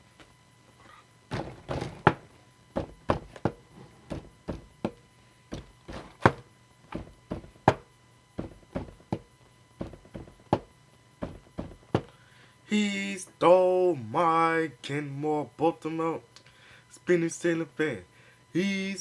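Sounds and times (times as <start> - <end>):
dull percussive knocks: 7.0 - 7.8, 8.4 - 12.1.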